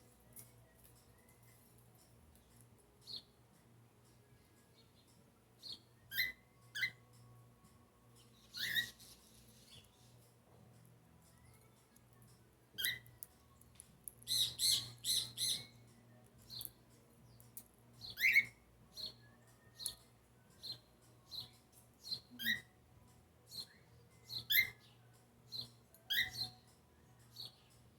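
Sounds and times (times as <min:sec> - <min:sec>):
small animal chirping: 0:05.6 - 0:07.1, 0:08.4 - 0:10.1, 0:12.8 - 0:13.3, 0:14.2 - 0:15.8, 0:18.0 - 0:19.2, 0:20.6 - 0:22.7, 0:23.5 - 0:24.9, 0:25.5 - 0:26.7.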